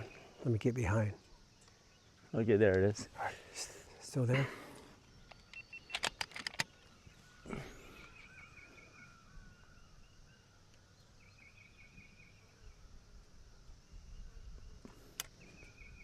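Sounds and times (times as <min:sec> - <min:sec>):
bird chirping: 0:00.0 - 0:16.0
sharp clicks: 0:05.2 - 0:06.9, 0:14.9 - 0:15.4.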